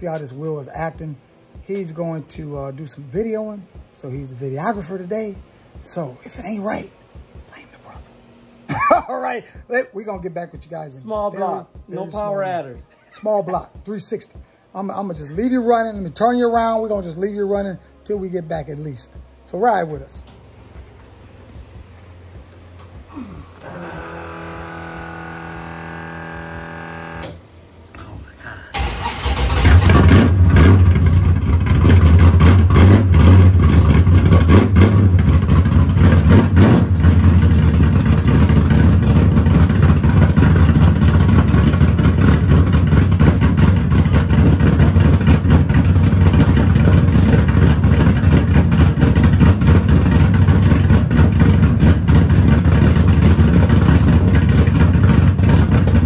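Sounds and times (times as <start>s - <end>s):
music: 0.0s - 24.4s
loud car engine running: 20.0s - 27.4s, 28.8s - 56.0s.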